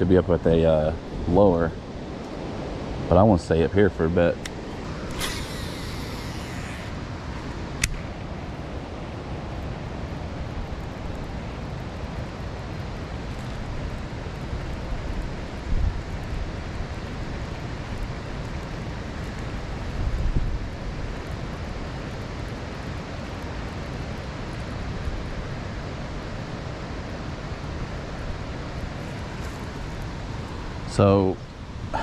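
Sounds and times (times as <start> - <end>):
sharp click: 7.8 - 8.1.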